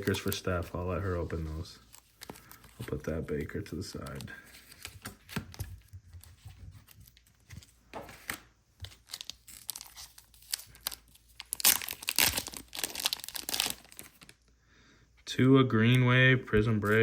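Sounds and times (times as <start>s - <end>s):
cards rustling and clicking: 0.0s - 14.4s, 15.8s - 17.0s
packaging crinkling and tearing: 6.8s - 14.4s.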